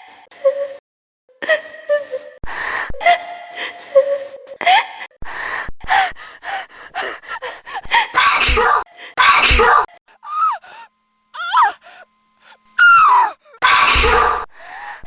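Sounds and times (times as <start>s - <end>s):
woman gasping: 5.2s - 8.2s, 10.1s - 13.6s, 14.5s - 15.0s
woman crying out: 5.9s - 7.9s, 10.1s - 13.6s, 14.6s - 15.0s
woman sneezing loudly: 10.2s - 12.0s.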